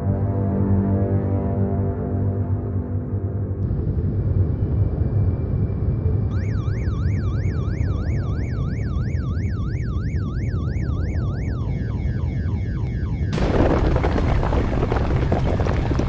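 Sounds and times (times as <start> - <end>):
deep rumble: 3.5 - 6.3, 13.4 - 16.0
emergency siren yelping: 6.3 - 13.4
loud burst of noise: 13.4 - 16.0.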